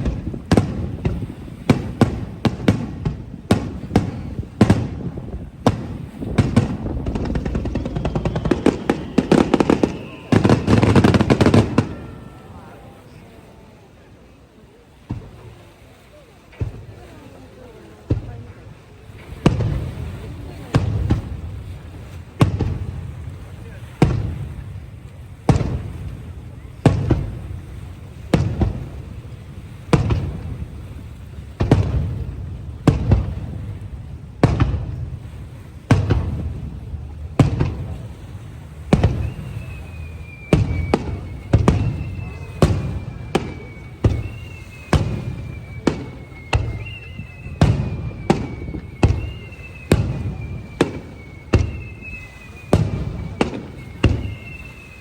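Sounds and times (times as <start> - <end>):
firework shells booming: 0.0 - 13.2, 15.0 - 15.6, 19.2 - 55.0
falling firework whistle: 0.0 - 13.6, 29.8 - 30.7, 35.8 - 55.0.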